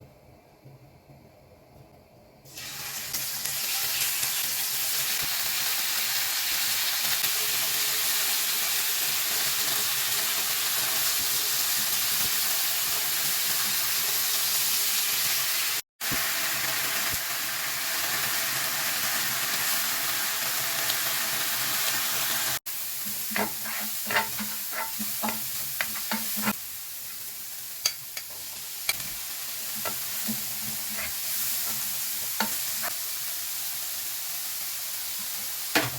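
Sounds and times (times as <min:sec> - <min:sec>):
food sizzling in frying pan: 0:02.5 - 0:35.9
utensil scraping pan: 0:23.0 - 0:26.6, 0:29.7 - 0:33.0.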